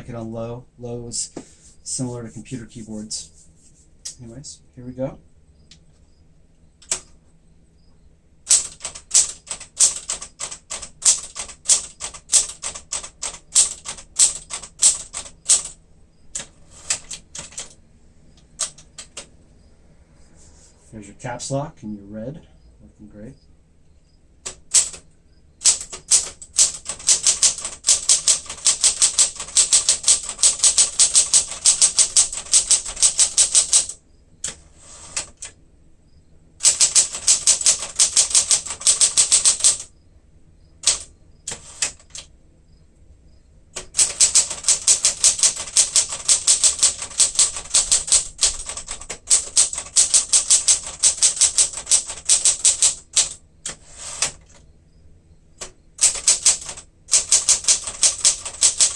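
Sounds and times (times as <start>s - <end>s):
manual typewriter keystrokes: 6.8s - 7.2s, 8.5s - 17.8s, 18.5s - 19.3s, 24.4s - 25.0s, 25.6s - 35.6s, 36.6s - 39.9s, 40.8s - 42.3s, 43.8s - 54.6s, 55.6s - 58.9s.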